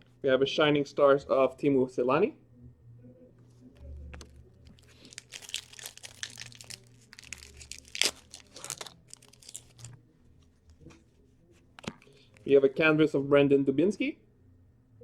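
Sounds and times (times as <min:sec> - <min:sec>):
foil wrapper tearing and crinkling: 0:04.8 - 0:10.0.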